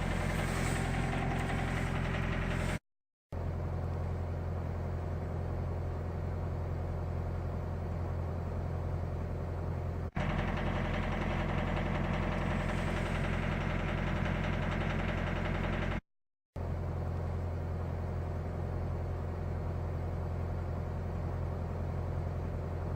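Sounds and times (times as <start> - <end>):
diesel engine idling: 0.0 - 2.8, 3.4 - 16.0
harsh engine clatter with knocking: 0.0 - 2.8, 10.1 - 16.0.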